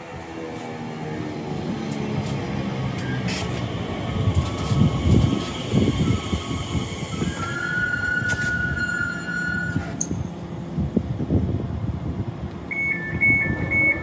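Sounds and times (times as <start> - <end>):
train rumbling: 0.0 - 14.0
train brakes squealing: 2.3 - 10.3.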